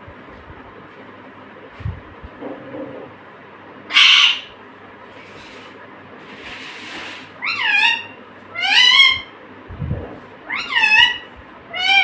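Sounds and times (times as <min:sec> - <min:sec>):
parrot screeching and calling: 0:03.9 - 0:04.6, 0:07.4 - 0:09.4, 0:10.4 - 0:12.0.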